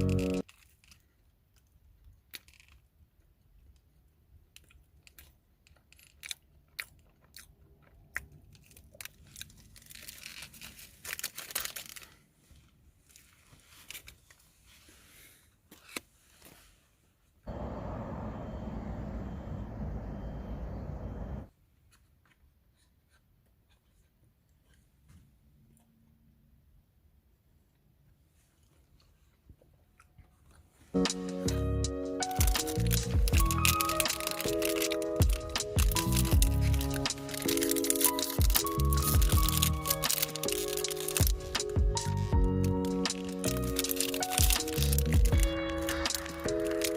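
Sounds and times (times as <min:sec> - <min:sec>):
snack wrapper crinkling and tearing: 0:00.0 - 0:14.4, 0:30.4 - 0:46.9.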